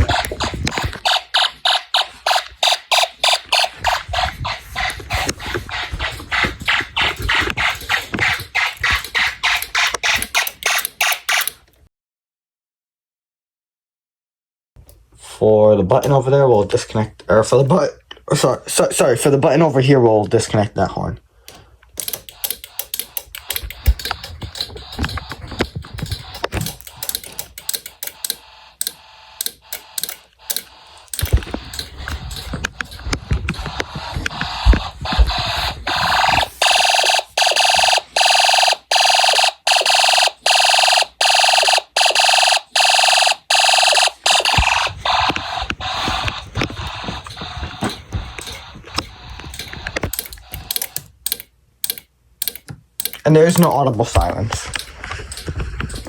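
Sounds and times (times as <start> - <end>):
plastic parts clicking and clattering: 0.0 - 11.8, 21.5 - 38.3, 44.0 - 56.0.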